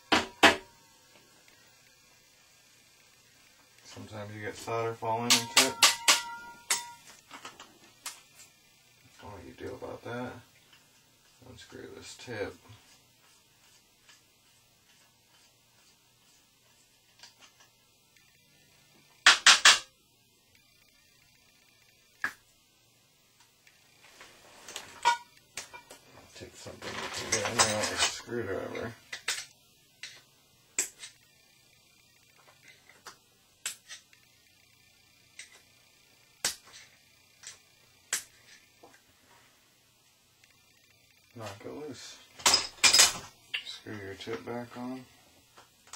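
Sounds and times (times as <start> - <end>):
sharp metal clacks: 5.2 - 7.1
screwdriver tapping metal: 5.2 - 7.2.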